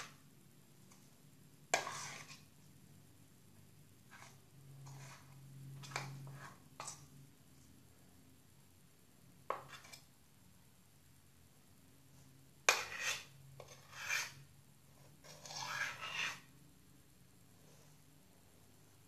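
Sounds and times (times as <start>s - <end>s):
utensil scraping in a bowl: 0.9s - 2.6s, 4.0s - 7.2s, 9.5s - 10.1s, 12.6s - 16.6s.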